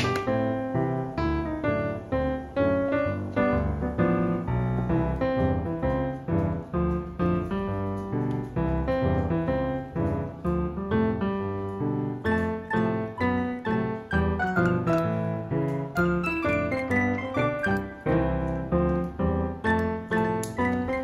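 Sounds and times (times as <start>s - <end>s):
piano tune: 0.0s - 21.0s.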